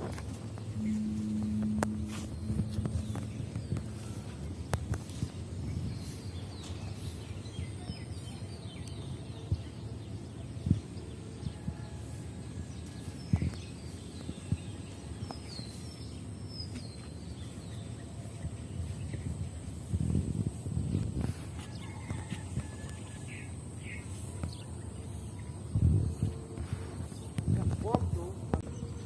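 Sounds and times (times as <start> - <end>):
faint high whine: 0.0 - 6.2
low rumble: 0.0 - 6.6
small birds chirping: 0.6 - 11.2, 12.0 - 29.0.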